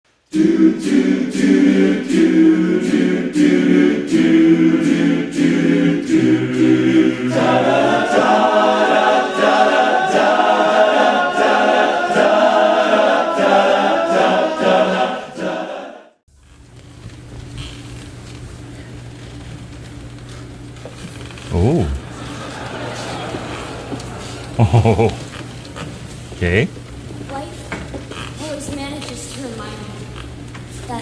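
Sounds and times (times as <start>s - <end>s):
voices singing in harmony: 0.3s - 16.1s, 21.2s - 26.7s.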